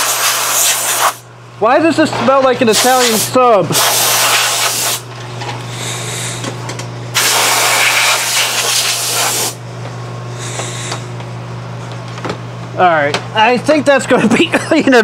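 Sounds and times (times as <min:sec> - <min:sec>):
compressed air hissing: 0:00.0 - 0:01.2, 0:02.7 - 0:05.0, 0:07.2 - 0:09.6
steady low hum: 0:00.0 - 0:15.0.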